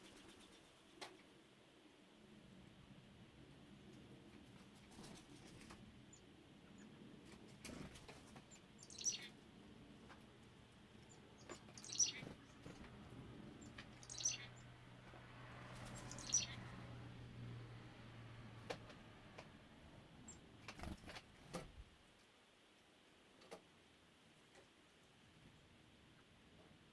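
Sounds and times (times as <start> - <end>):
bird calling: 8.8 - 9.4, 11.1 - 12.6, 13.6 - 14.7, 15.9 - 16.7.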